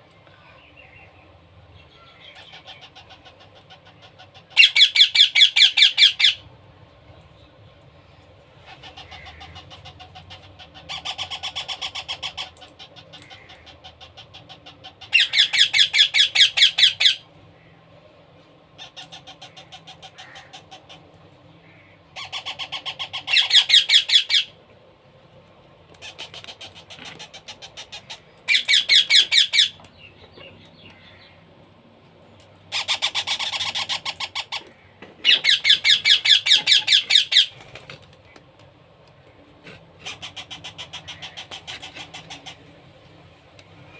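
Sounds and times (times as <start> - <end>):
baby parrots begging calls: 1.9 - 6.4, 8.6 - 17.7, 18.8 - 24.6, 26.0 - 30.1, 32.7 - 37.7, 40.0 - 42.7.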